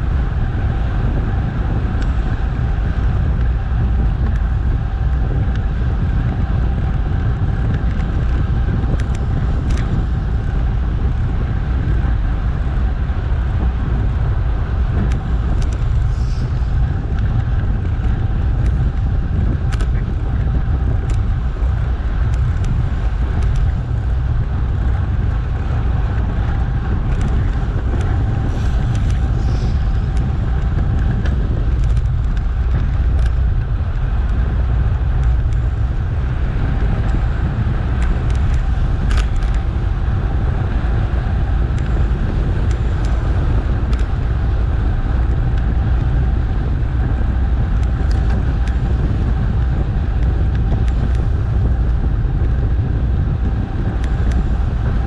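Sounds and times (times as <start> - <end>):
wind rush and road noise: 0.0 - 55.0
faint ticks: 7.7 - 9.9, 27.1 - 33.5.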